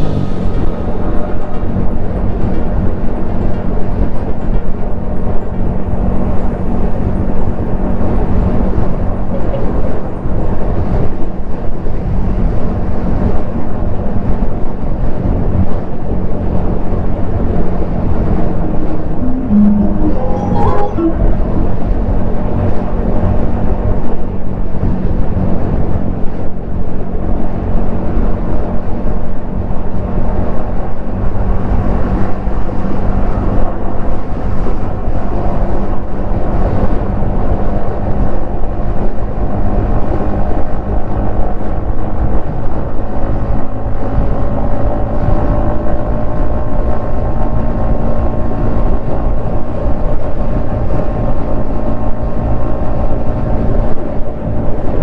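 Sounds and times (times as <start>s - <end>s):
motorcycle engine cruising: 0.0s - 5.0s.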